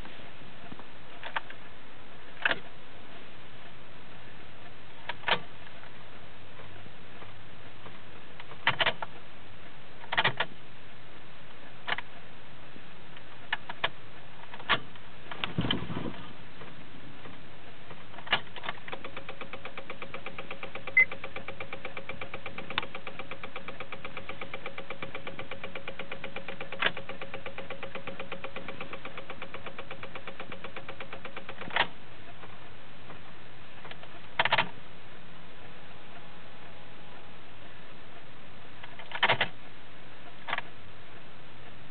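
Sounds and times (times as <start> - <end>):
faint steady tone: 0.0 - 41.9
car starter clicking: 18.2 - 32.0.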